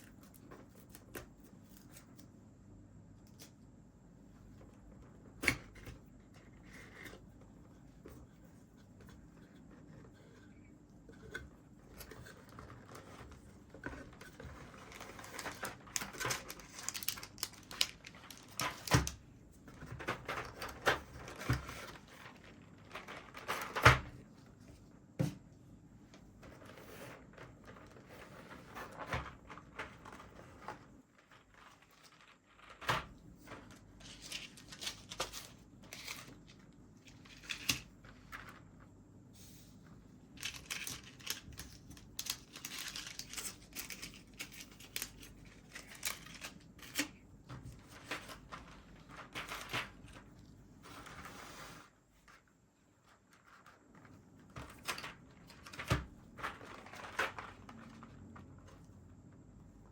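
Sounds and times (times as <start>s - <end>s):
packaging rustling and crinkling: 11.2s - 24.2s, 26.4s - 38.7s, 40.4s - 51.8s, 54.6s - 58.8s.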